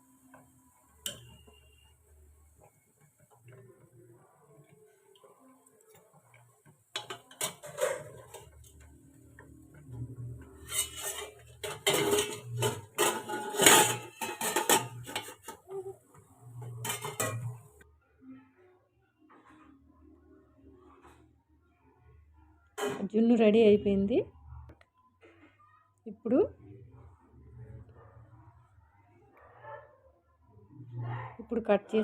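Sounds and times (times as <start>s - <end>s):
pots and lids clattering: 0.3s - 1.8s, 6.3s - 17.8s.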